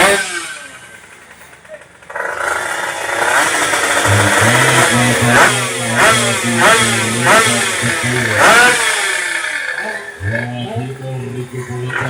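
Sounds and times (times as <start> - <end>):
motorcycle engine throttle blips: 0.0 - 12.0
low engine drone: 3.3 - 12.0.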